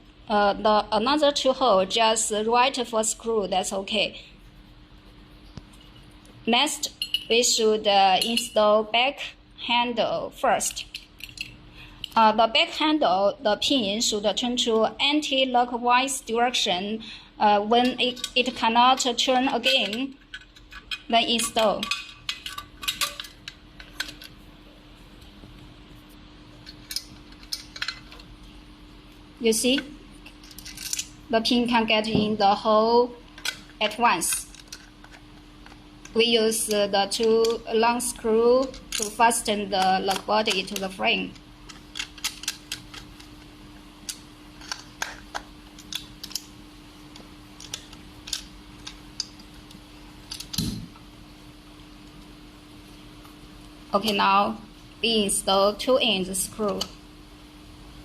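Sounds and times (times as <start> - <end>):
faint steady hum: 0.0 - 58.0
small metal clicks of lock parts: 10.7 - 12.2, 41.7 - 43.1.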